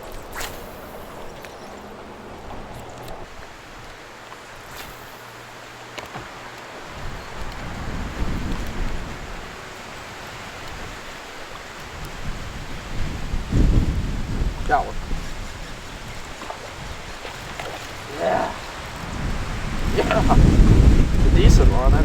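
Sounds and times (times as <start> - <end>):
water around boat: 0.0 - 22.0
wind on microphone: 6.9 - 22.0.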